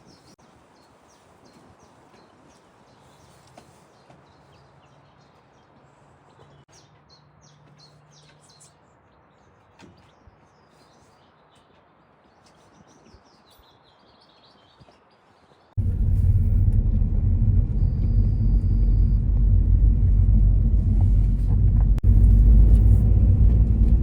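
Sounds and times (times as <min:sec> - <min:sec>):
low steady hum: 0:15.8 - 0:24.0.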